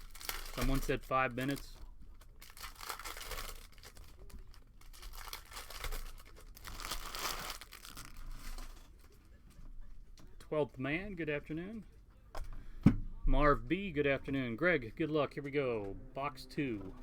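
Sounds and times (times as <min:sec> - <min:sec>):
packaging torn and crinkled: 0:00.0 - 0:08.9.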